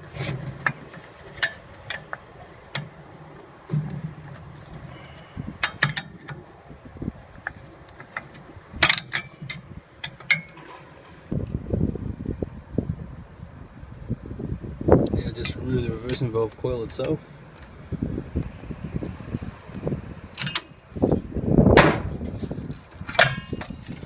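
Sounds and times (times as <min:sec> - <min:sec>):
sharp clicks of hand tools: 0:20.4 - 0:20.7.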